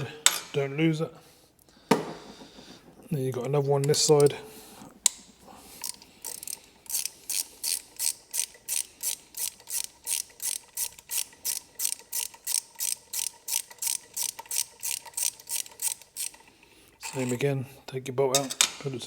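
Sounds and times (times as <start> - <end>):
socket ratchet clicking: 5.0 - 17.4.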